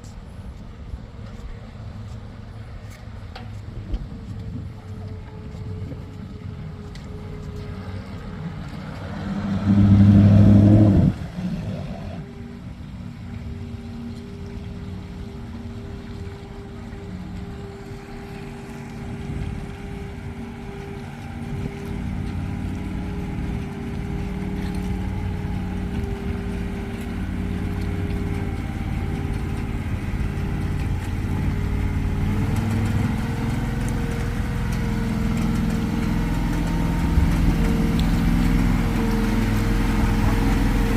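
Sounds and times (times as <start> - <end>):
boat engine humming: 0.0 - 40.9.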